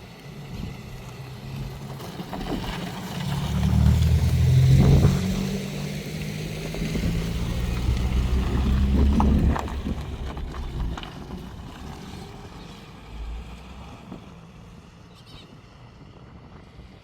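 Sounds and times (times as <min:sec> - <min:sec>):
train rumble: 0:06.5 - 0:17.0.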